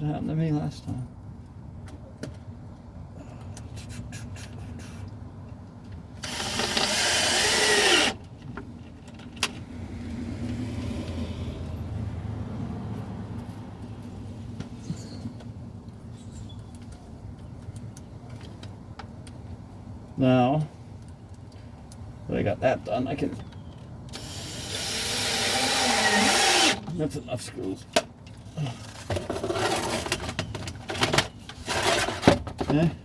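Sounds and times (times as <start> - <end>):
screw gun driving a screw: 6.2 - 8.2, 24.2 - 26.8.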